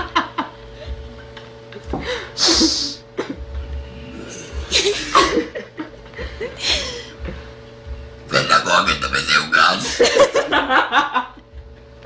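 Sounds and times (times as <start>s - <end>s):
faint steady hum: 0.0s - 12.0s
breathy hissy voice bursts: 8.3s - 10.0s.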